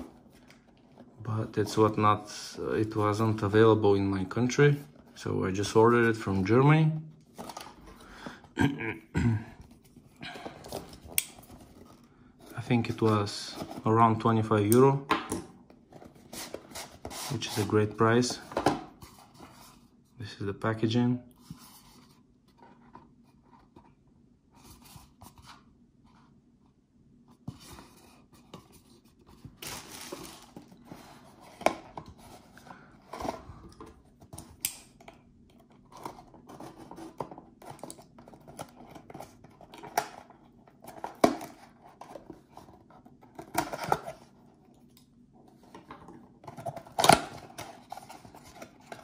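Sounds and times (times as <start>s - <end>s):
packaging rustling and tearing: 29.4s - 32.3s.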